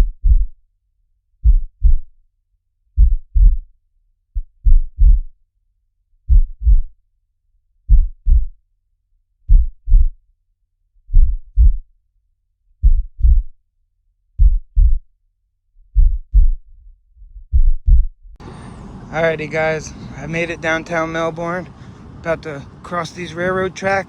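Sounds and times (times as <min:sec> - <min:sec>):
heartbeat double thumps: 0:00.0 - 0:00.6, 0:01.4 - 0:02.1, 0:03.0 - 0:03.7, 0:04.4 - 0:05.4, 0:06.3 - 0:07.0, 0:07.9 - 0:08.6, 0:09.5 - 0:10.2, 0:11.1 - 0:11.9, 0:12.8 - 0:13.6, 0:14.4 - 0:15.1, 0:15.8 - 0:18.4.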